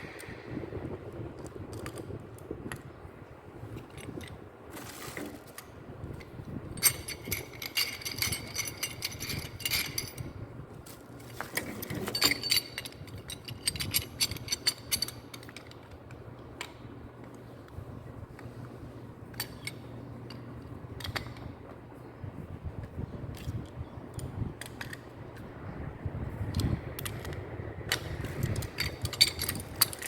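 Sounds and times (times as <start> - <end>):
steady low hum: 0.0 - 30.0
metallic clicking and rattling tools: 5.2 - 10.3, 11.3 - 17.4, 19.3 - 21.5, 22.8 - 25.1, 26.5 - 30.0.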